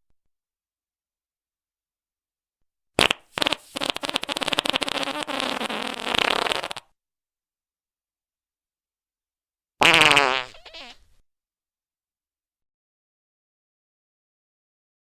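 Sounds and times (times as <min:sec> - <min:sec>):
fart: 0:03.0 - 0:06.9, 0:09.8 - 0:11.0.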